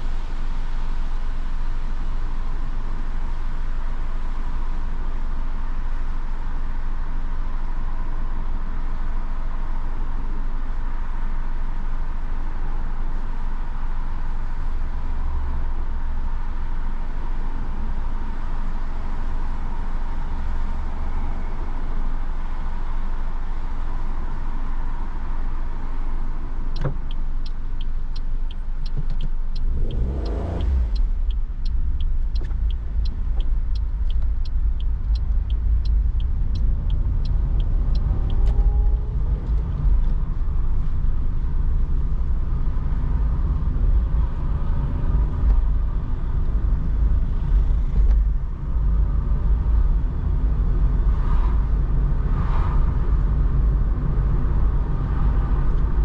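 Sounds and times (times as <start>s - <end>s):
car engine and road rumble: 0.0s - 56.0s
turn indicator ticking: 26.4s - 40.9s.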